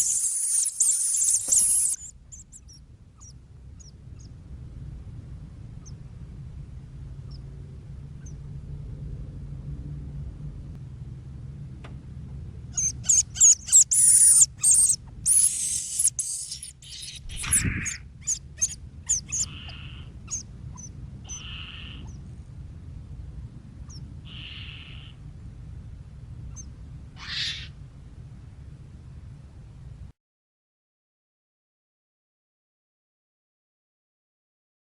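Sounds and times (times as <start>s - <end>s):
bird calling: 0.0s - 4.3s, 12.8s - 22.2s, 24.3s - 25.2s, 26.6s - 27.7s
low rumble: 0.0s - 30.1s.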